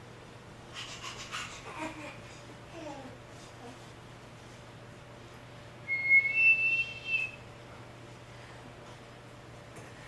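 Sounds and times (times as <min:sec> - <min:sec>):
low steady hum: 0:00.0 - 0:10.0
small animal whistling call: 0:05.9 - 0:07.4.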